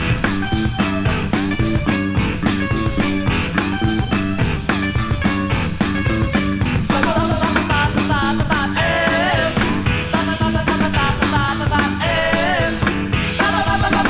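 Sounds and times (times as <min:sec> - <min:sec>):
rock band playing: 0:00.0 - 0:14.0
person singing: 0:06.9 - 0:14.0.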